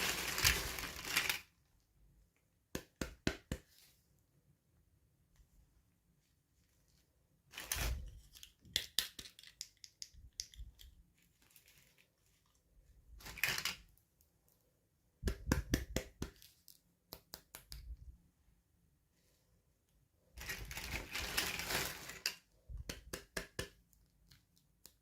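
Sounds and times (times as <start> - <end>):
packaging rustling and tearing: 0.0 - 1.5, 20.4 - 22.4.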